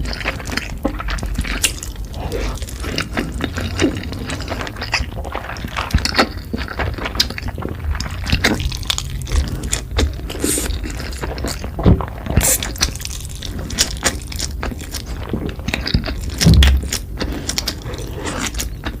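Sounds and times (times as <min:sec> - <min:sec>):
wet chewing and mouth smacks: 0:00.0 - 0:19.0.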